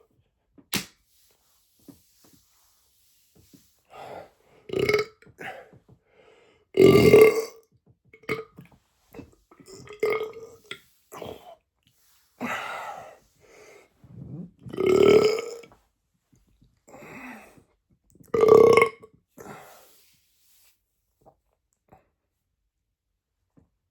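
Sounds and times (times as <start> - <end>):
man belching: 4.7 - 5.6, 6.8 - 7.6, 9.7 - 10.5, 14.7 - 15.7, 18.4 - 19.1.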